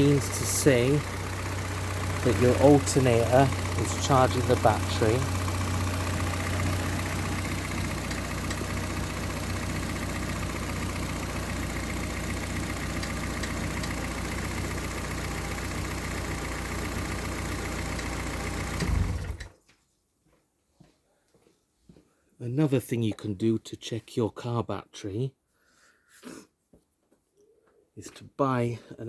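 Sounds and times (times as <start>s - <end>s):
car engine idling: 0.0s - 19.5s.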